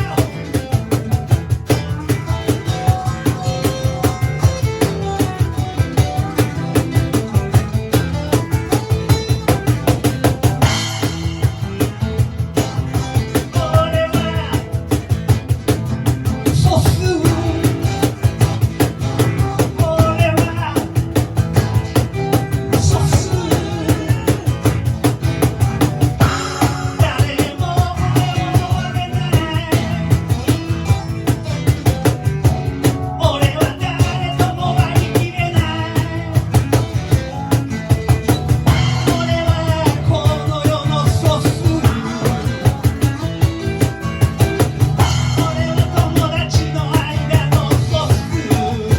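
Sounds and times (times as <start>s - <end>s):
drum kit beat: 0.0s - 48.9s
rock band playing live: 0.0s - 48.9s
person singing: 13.2s - 15.0s, 16.5s - 18.2s, 19.3s - 21.1s, 22.6s - 25.0s, 26.2s - 31.2s, 33.2s - 36.8s, 38.7s - 43.1s, 45.0s - 48.9s.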